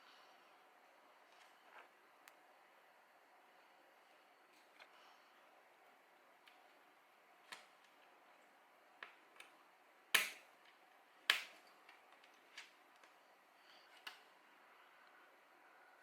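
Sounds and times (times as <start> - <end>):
plastic parts clicking and snapping: 10.2 - 13.2.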